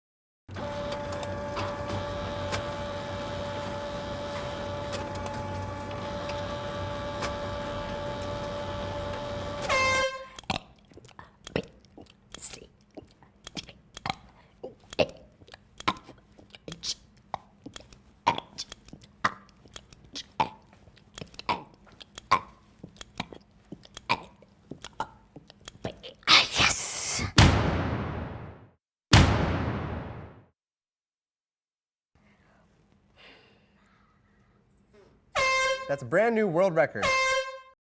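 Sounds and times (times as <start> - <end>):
person belching letters: 13.0 - 17.5, 18.2 - 19.5, 20.1 - 20.7, 21.3 - 26.6.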